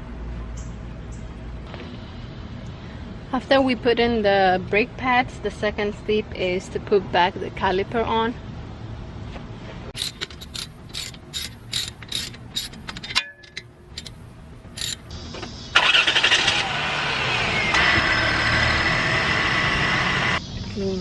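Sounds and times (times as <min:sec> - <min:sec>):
power tool whirring: 0:10.0 - 0:13.1, 0:13.9 - 0:15.1, 0:16.0 - 0:20.4
metallic clicks: 0:10.0 - 0:15.1.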